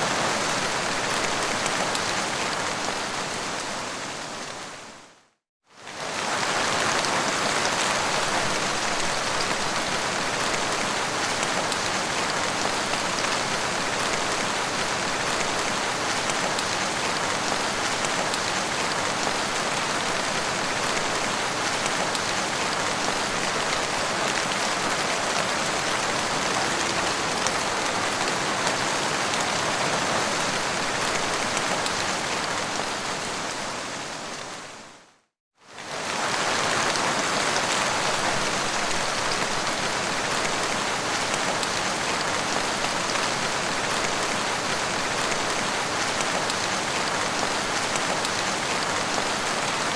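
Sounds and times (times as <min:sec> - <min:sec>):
heavy rain on a windscreen: 0:05.8 - 0:34.2.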